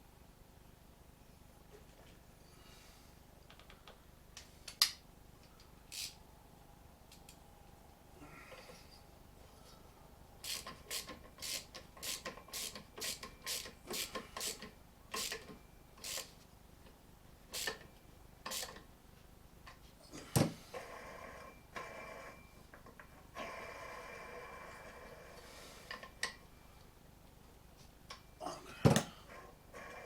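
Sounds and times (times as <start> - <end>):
ratchet clicking: 5.9 - 6.2, 10.4 - 16.3, 17.6 - 17.8, 18.5 - 18.8.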